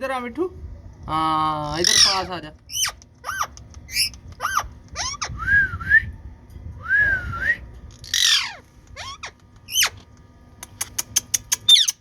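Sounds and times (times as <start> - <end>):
parakeet calling: 1.6 - 5.4, 8.0 - 10.1, 10.7 - 12.0
parakeet screech: 1.8 - 5.3, 8.0 - 10.0
parakeet wavering whistles: 1.8 - 5.9, 8.1 - 10.0, 11.1 - 12.0.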